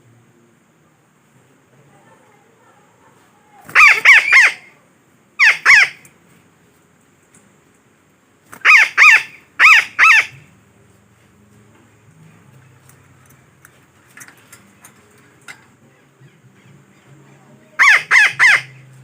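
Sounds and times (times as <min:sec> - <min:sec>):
parakeet calling: 0:03.7 - 0:04.7, 0:05.4 - 0:06.0, 0:08.6 - 0:10.5, 0:15.9 - 0:19.0.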